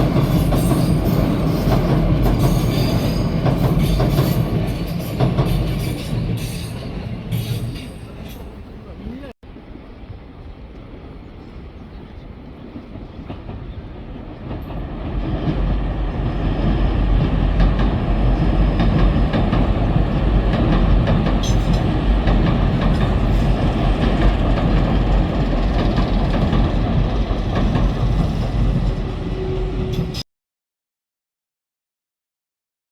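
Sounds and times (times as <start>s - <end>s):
train rumbling past: 0.0s - 30.2s
wheels ticking on rails: 12.8s - 30.1s.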